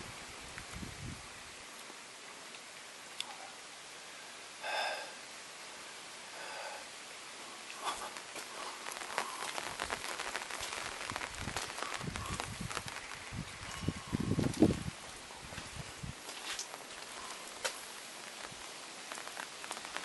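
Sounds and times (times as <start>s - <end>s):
running water rushing: 0.0s - 20.0s
dense crackling and rustling: 7.6s - 20.0s.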